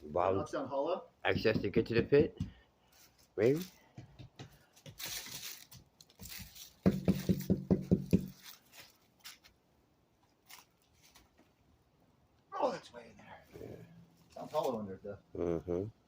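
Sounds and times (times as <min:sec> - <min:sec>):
knocks on hollow surface: 0:01.3 - 0:02.6, 0:06.8 - 0:08.4
scraping and rustling: 0:04.9 - 0:07.5, 0:08.1 - 0:09.6, 0:10.3 - 0:11.6.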